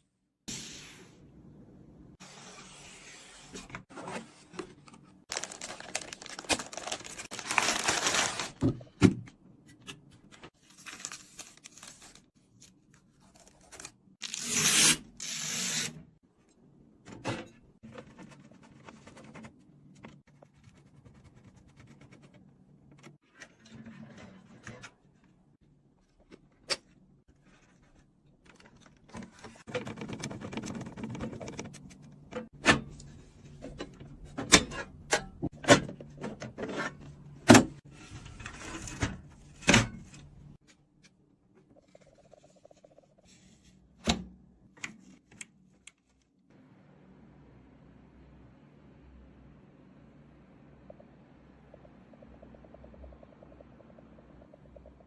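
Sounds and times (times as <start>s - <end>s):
packaging rustling and tearing: 5.3s - 8.6s, 10.6s - 12.3s.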